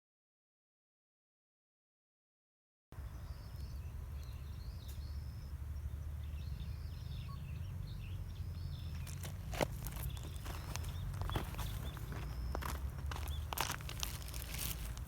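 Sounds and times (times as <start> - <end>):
small birds chirping: 3.0 - 15.0.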